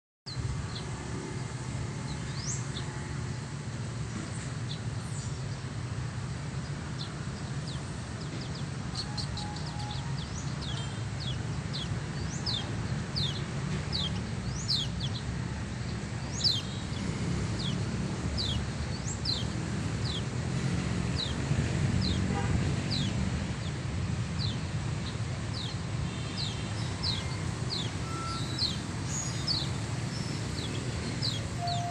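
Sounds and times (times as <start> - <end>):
small bird chirping: 8.4 - 15.2, 15.8 - 17.0, 17.6 - 20.3, 24.4 - 31.9.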